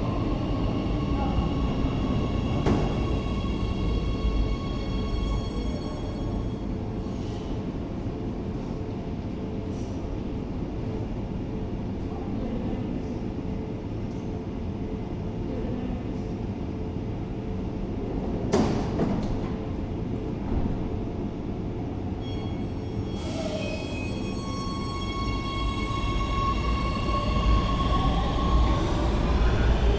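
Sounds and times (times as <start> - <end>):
train rumbling: 0.0 - 29.9.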